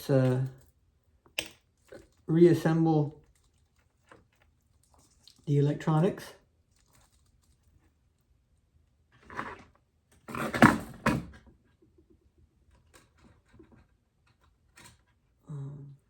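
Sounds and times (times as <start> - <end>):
small parts rustling and clattering: 0.0 - 2.5, 3.1 - 5.6, 9.2 - 15.3.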